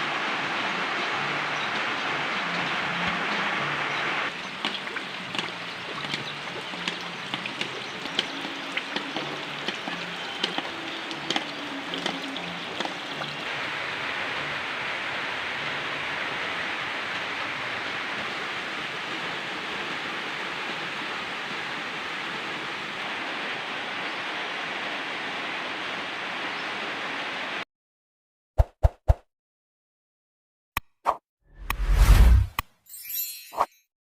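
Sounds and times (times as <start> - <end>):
heavy rain: 0.0 - 27.6
water dripping: 1.2 - 13.5.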